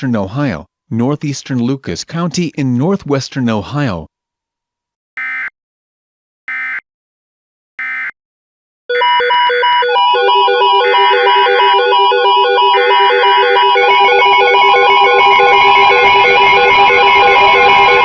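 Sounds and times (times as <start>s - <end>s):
electronic synth music: 8.9s - 18.0s.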